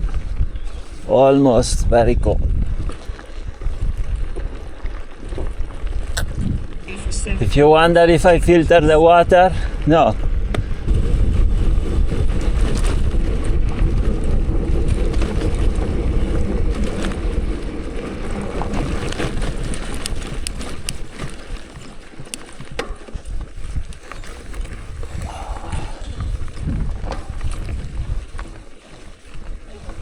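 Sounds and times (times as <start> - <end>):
wind buffeting microphone: 0.0 - 30.0
small clicks and rattles: 12.2 - 25.2.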